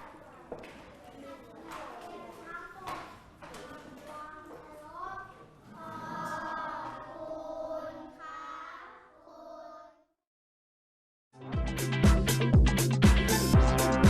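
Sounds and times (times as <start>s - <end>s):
children chanting in unison: 2.2s - 10.1s.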